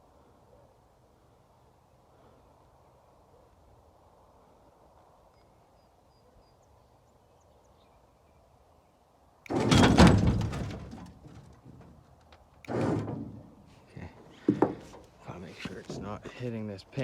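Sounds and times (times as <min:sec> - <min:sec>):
heavy metal clank and scrape: 0:09.5 - 0:11.9, 0:12.7 - 0:13.7
metal clunk: 0:09.5 - 0:12.0, 0:12.6 - 0:13.6.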